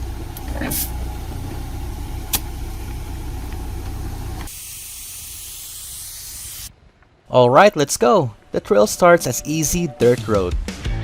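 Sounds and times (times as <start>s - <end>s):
vehicle engine idling: 0.0s - 6.5s
air hissing from a tyre: 0.2s - 6.7s.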